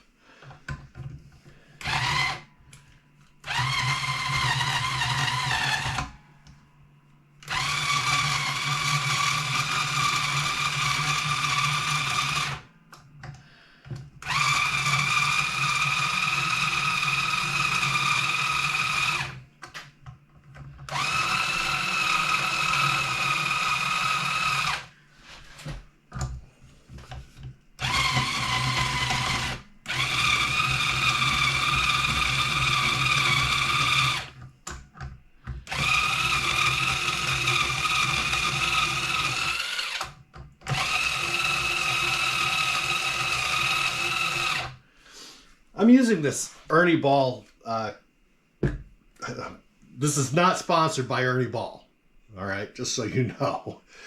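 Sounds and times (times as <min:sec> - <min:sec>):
motorized string winder whining: 0:01.8 - 0:06.2, 0:07.4 - 0:13.4, 0:14.2 - 0:19.9, 0:20.6 - 0:26.3, 0:27.8 - 0:34.4, 0:35.5 - 0:44.8.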